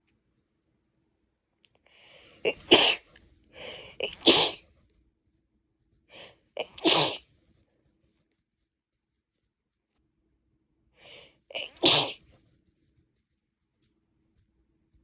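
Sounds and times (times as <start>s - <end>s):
woman sneezing: 2.4s - 3.0s, 3.6s - 4.6s, 6.6s - 7.2s, 11.5s - 12.2s
quick breath in: 3.6s - 4.6s.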